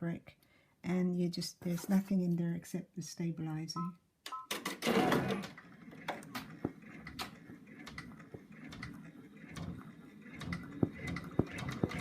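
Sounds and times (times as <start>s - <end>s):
embroidery machine motor hum: 5.0s - 12.0s.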